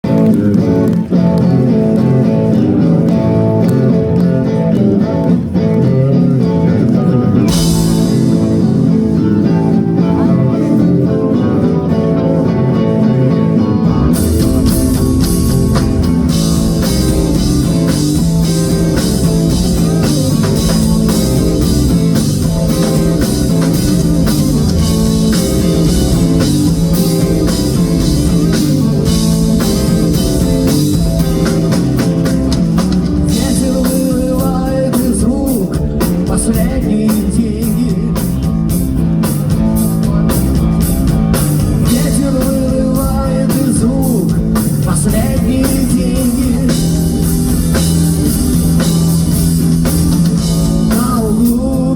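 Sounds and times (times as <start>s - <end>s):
rock band guitars and bass: 0.0s - 51.9s
drum kit and cymbals: 7.5s - 10.7s, 13.9s - 51.9s.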